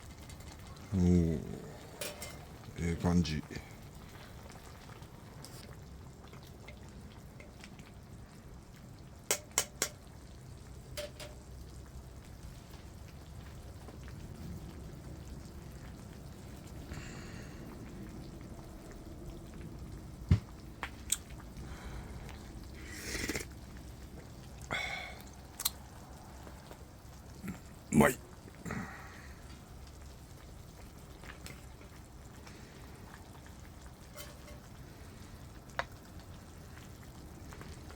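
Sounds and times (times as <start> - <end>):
pot simmering and bubbling: 0.0 - 37.9
clinks and knocks: 11.0 - 11.4.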